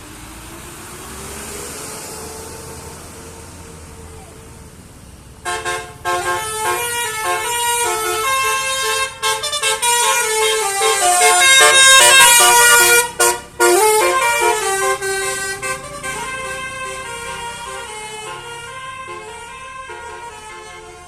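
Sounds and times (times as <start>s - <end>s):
multi-tone vehicle horn tune: 5.4s - 21.0s.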